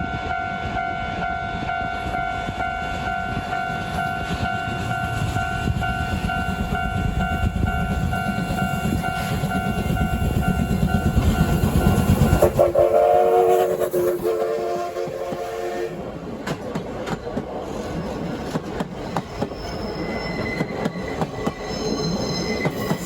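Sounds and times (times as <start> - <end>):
railroad crossing bell clanging: 0.0 - 12.8, 18.9 - 23.0
freight train rumbling: 0.0 - 23.0.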